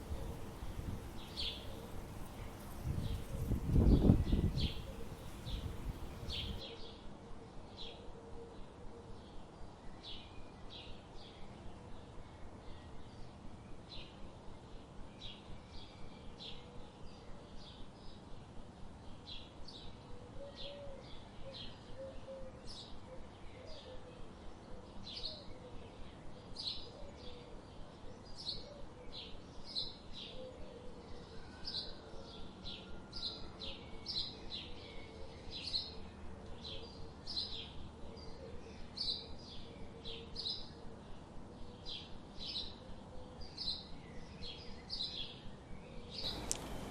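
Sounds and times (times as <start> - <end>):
birds chirping: 0.0 - 6.6, 46.1 - 46.9.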